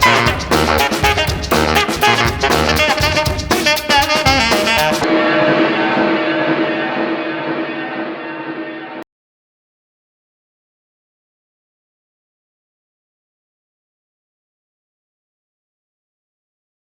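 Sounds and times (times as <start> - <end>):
jazzy band music: 0.0 - 5.3.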